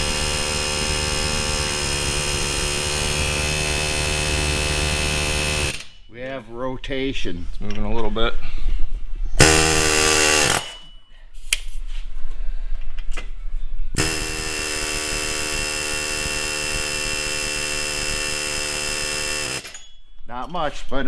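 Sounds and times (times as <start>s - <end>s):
pneumatic air chisel hammering: 0.0s - 6.1s, 9.4s - 11.0s, 14.0s - 20.0s.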